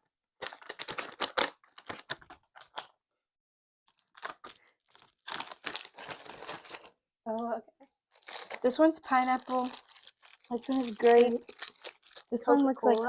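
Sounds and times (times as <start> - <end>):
plastic packaging crinkling: 0.4 - 2.9, 3.9 - 6.9, 8.1 - 13.0.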